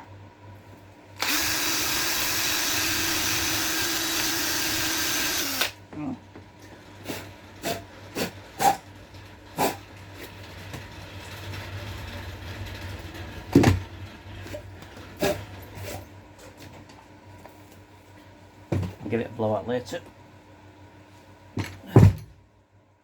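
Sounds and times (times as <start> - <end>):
knocks and clunks of handling: 18.7 - 19.1, 21.6 - 22.4.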